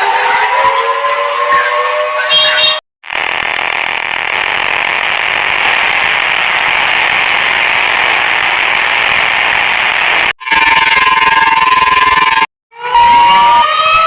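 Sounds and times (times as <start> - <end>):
harsh alert buzzing: 3.0 - 12.5.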